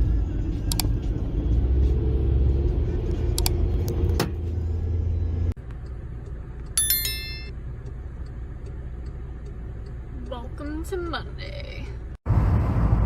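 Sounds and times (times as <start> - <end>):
car engine and road rumble: 0.0 - 13.0
sharp clicks: 0.7 - 0.9.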